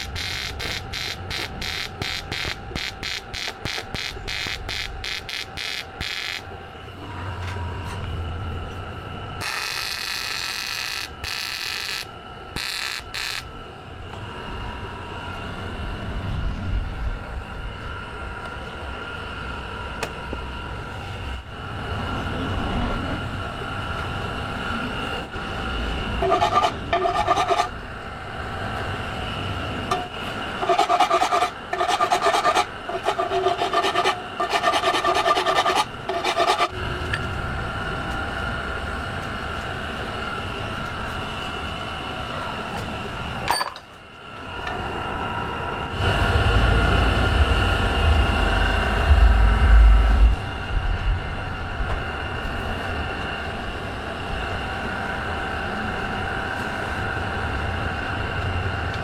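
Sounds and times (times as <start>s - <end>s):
workshop machinery humming: 0.0s - 59.0s
rasping scraping on metal wheel: 26.2s - 27.8s, 30.6s - 36.7s.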